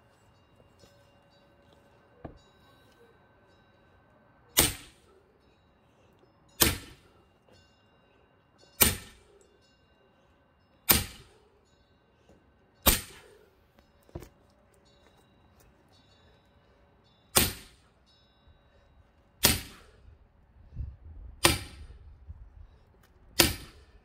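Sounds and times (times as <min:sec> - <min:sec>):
axe blows splitting log: 0:19.4 - 0:19.9.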